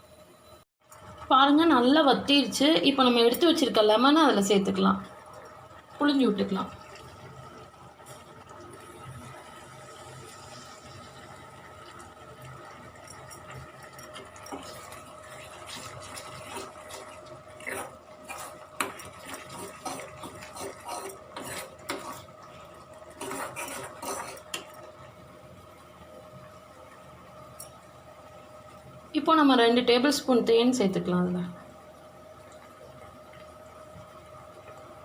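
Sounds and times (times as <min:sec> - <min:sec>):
faint steady hum: 0:00.0 - 0:35.0
spoon stirring and scraping pan: 0:13.0 - 0:25.0.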